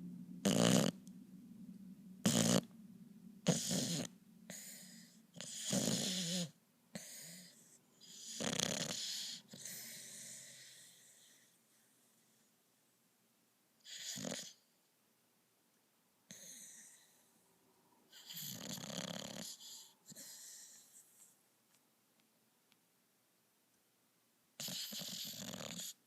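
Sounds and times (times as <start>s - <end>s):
person snoring: 0.4s - 1.0s, 2.2s - 2.7s, 3.4s - 11.0s.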